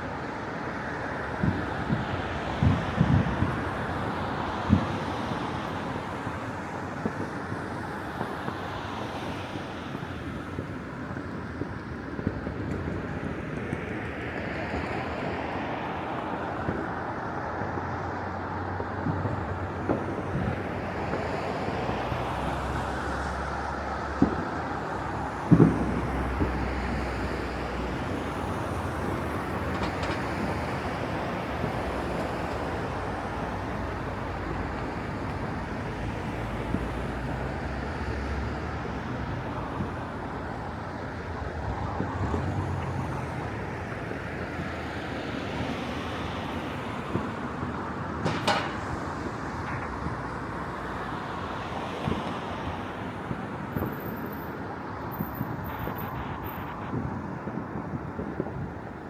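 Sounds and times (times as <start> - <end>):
city traffic rumble: 0.0 - 59.0
wind: 0.0 - 59.0
distant fireworks bangs: 16.4 - 22.3, 23.1 - 44.9, 45.5 - 59.0.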